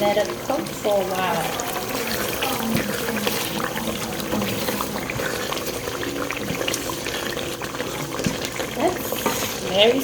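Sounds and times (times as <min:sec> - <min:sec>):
stew bubbling and sizzling: 0:00.0 - 0:10.0.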